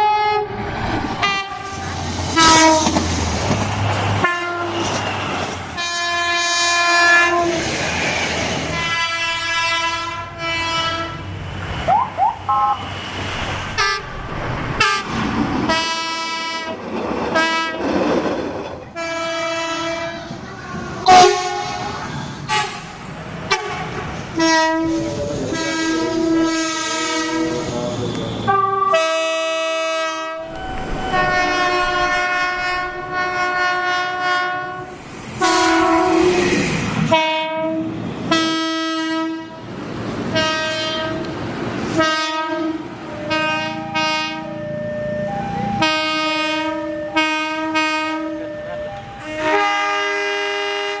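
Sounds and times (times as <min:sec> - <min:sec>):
locomotive air horn blasts: 0:01.2 - 0:03.0, 0:04.2 - 0:07.6, 0:08.7 - 0:11.2, 0:19.0 - 0:20.3, 0:21.0 - 0:22.9, 0:23.5 - 0:36.5, 0:37.1 - 0:39.6, 0:40.3 - 0:41.3, 0:41.9 - 0:44.6, 0:45.8 - 0:51.0.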